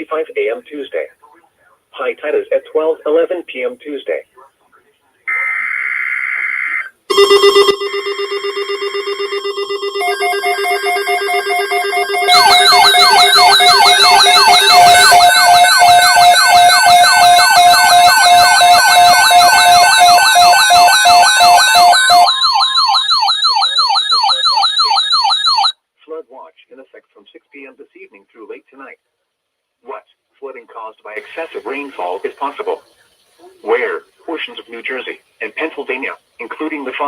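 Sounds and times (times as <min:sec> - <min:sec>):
steady buzzing tone: 0:07.1 - 0:23.4
electronic siren yelp sweeps: 0:07.1 - 0:25.7
slow wavering siren sweeps: 0:08.0 - 0:25.7.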